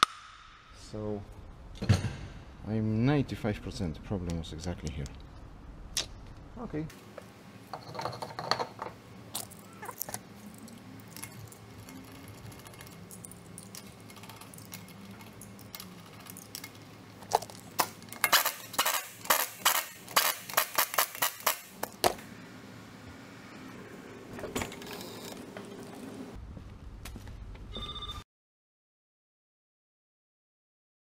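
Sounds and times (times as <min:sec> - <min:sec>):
small metal objects clinking: 0:07.7 - 0:21.8.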